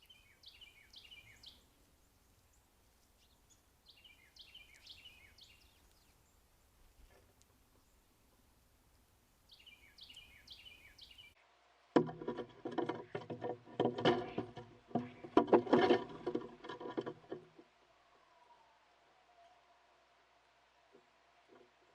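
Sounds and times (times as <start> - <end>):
bird calling: 0.0 - 8.1, 9.5 - 11.4
knocking and scraping on wood: 12.0 - 17.6.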